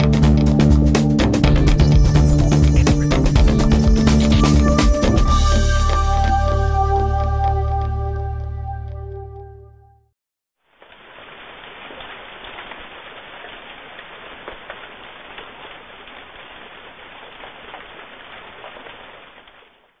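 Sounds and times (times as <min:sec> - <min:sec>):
background music: 0:00.0 - 0:10.0
crackling hiss: 0:10.6 - 0:20.0.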